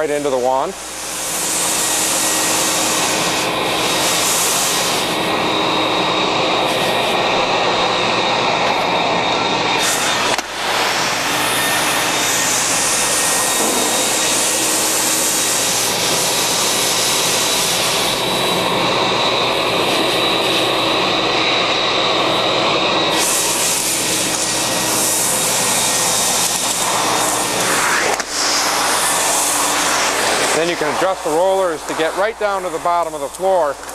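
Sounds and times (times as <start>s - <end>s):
industrial vacuum motor whine: 0.0s - 33.9s
rush of air: 13.4s - 15.4s, 26.7s - 32.2s.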